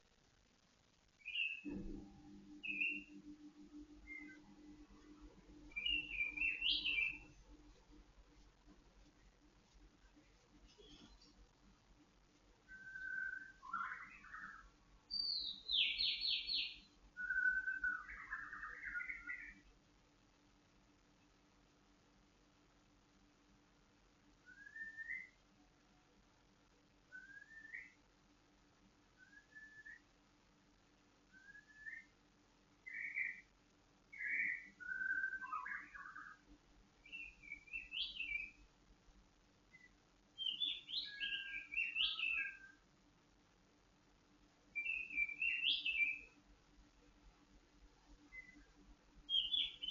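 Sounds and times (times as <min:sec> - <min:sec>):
songbird singing whistled phrases: 0:01.2 - 0:03.3, 0:04.0 - 0:04.6, 0:05.7 - 0:07.4, 0:12.6 - 0:19.6, 0:24.4 - 0:25.4, 0:27.1 - 0:28.0, 0:29.2 - 0:30.1, 0:31.3 - 0:32.2, 0:32.8 - 0:33.5, 0:34.1 - 0:36.4, 0:37.0 - 0:38.6, 0:39.7 - 0:42.8, 0:44.7 - 0:46.4, 0:48.3 - 0:48.7, 0:49.3 - 0:49.9.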